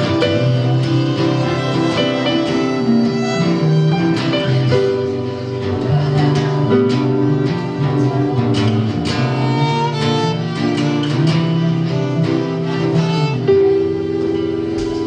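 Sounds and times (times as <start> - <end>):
plucked guitar: 0.0 - 15.0
sustained string-like lead melody: 0.0 - 15.0.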